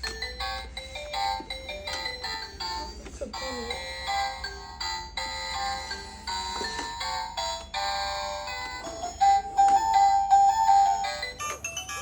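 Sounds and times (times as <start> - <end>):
toy claw machine electronic jingle: 3.4 - 12.0.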